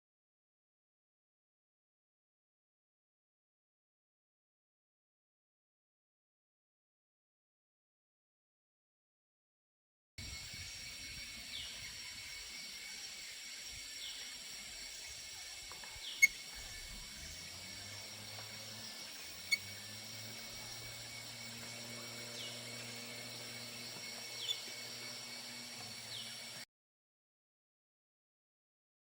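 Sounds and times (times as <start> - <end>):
low steady hum: 10.2 - 26.6
high-pitched insect drone: 10.2 - 26.7
bird chirps: 11.1 - 26.6.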